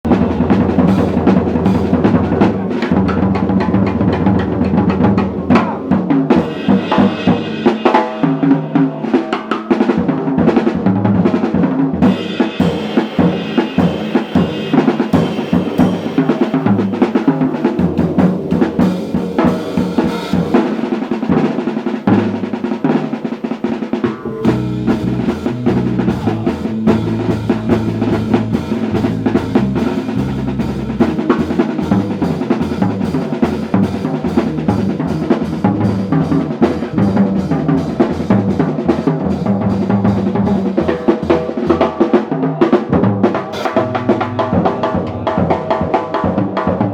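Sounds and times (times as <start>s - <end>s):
deep bass notes: 0.0s - 7.6s, 15.0s - 20.6s, 24.0s - 40.6s
drum kit: 0.0s - 46.9s
jazz band playing: 0.0s - 46.9s.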